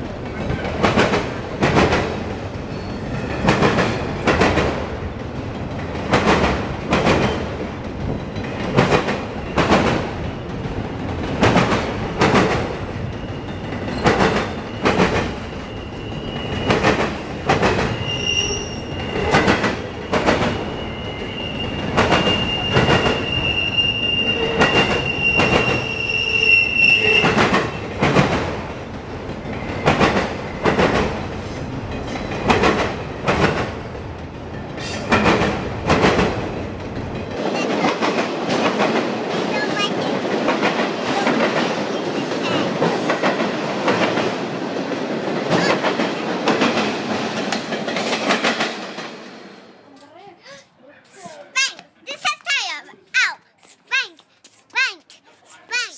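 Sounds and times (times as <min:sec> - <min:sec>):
train rumble: 0:00.0 - 0:49.6
train wheels clacking over rail joints: 0:00.0 - 0:49.6
high wheel squeal: 0:13.2 - 0:28.0.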